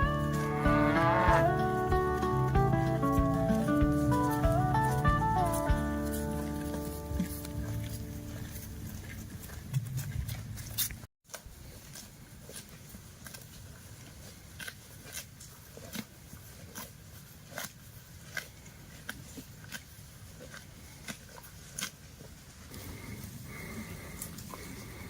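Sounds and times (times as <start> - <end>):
cattle chewing: 0.0 - 1.5, 6.7 - 25.0
cattle tearing grass: 0.1 - 1.5, 11.8 - 22.5.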